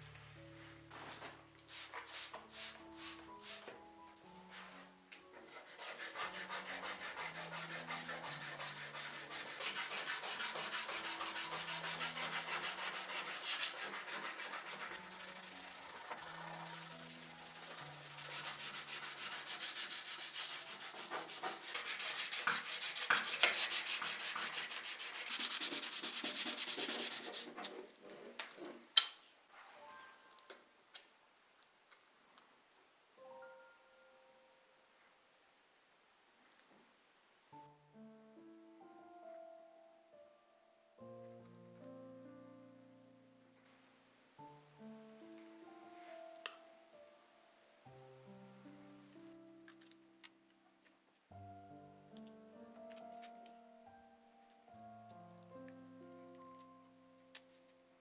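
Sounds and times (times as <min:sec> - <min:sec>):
sanding scratchy rubbing: 0:05.4 - 0:28.4.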